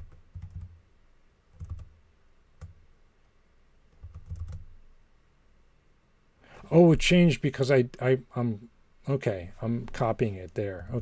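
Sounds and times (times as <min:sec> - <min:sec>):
computer keyboard typing: 0:00.0 - 0:00.8, 0:01.5 - 0:01.9, 0:03.9 - 0:04.7.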